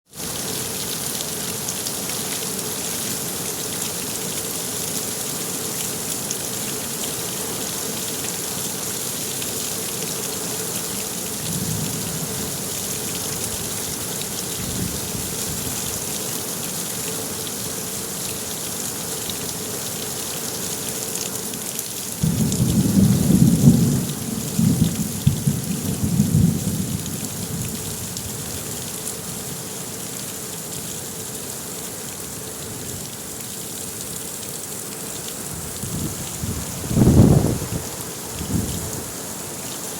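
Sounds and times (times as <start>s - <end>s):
rain pattering: 0.1s - 39.9s
rolling thunder rumble: 22.2s - 27.7s, 35.8s - 39.0s.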